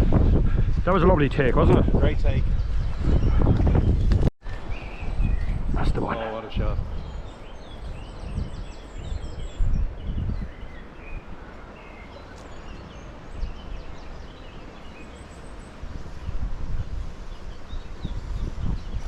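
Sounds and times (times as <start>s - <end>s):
dull low bumps: 0.0s - 4.3s
outdoor background noise: 0.0s - 19.0s
small birds chirping: 1.6s - 19.0s.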